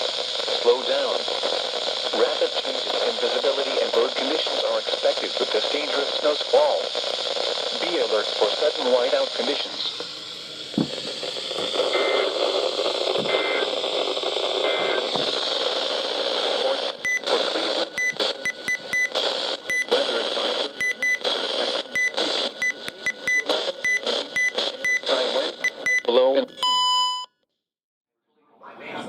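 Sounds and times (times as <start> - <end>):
radio static hiss: 0.0 - 26.5
high data burst: 11.0 - 25.9.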